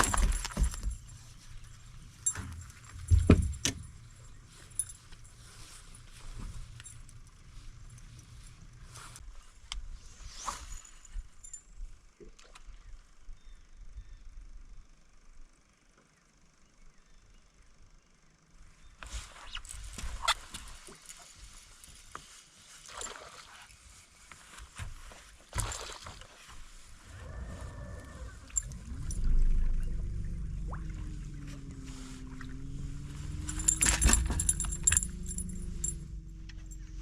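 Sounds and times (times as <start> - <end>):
boat motor rumbling: 27.0 - 37.0
metallic jangle: 33.2 - 37.0.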